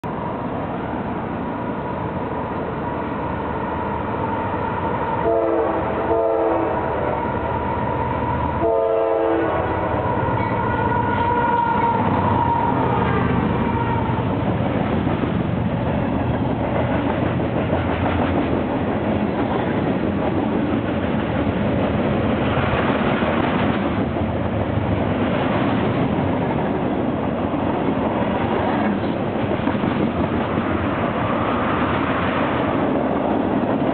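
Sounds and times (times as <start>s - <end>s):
locomotive engines rumbling: 0.1s - 33.9s
train air horn blasts: 5.2s - 7.4s, 8.6s - 14.2s.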